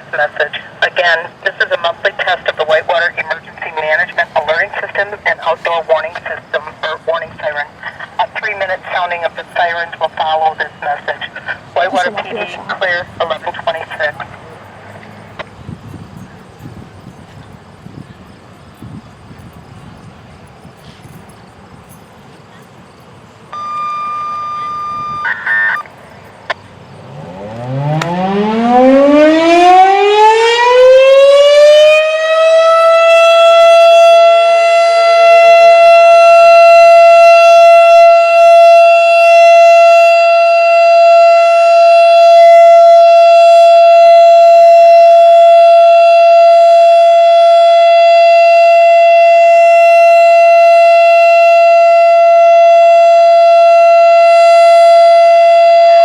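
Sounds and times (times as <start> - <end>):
warning siren winding up: 23.5 - 25.9, 26.5 - 56.0.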